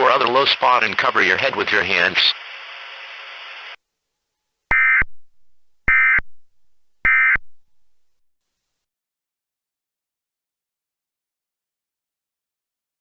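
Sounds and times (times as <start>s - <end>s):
steady hiss: 0.1s - 3.8s
warbling two-tone data bursts: 4.7s - 5.3s, 5.9s - 7.9s.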